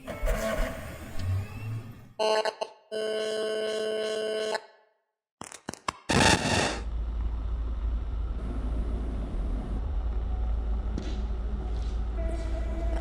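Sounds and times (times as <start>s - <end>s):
loud burst of noise: 6.1s - 7.1s
steady low hum: 6.2s - 13.0s.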